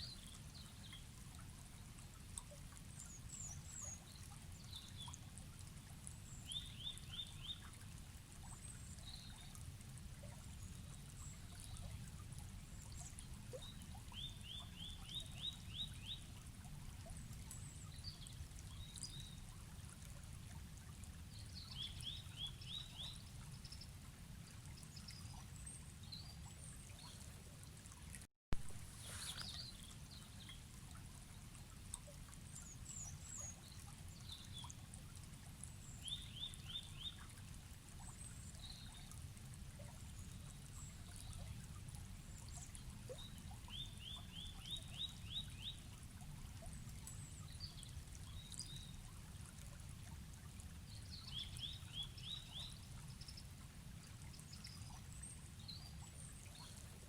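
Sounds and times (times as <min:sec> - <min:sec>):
stream rushing: 0:28.6 - 0:29.5.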